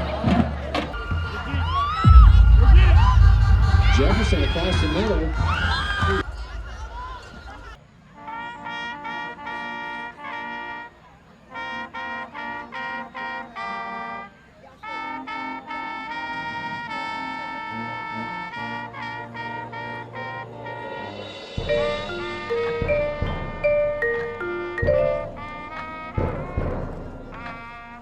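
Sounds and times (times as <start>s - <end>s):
low bass line: 2.0s - 5.8s, 21.7s - 27.4s
brass trumpet-like lead melody: 8.2s - 28.0s.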